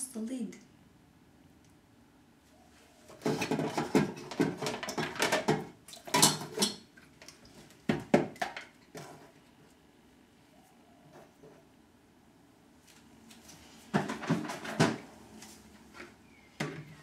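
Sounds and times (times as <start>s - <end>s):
kitchen items clattering: 3.1s - 6.9s, 13.9s - 15.1s.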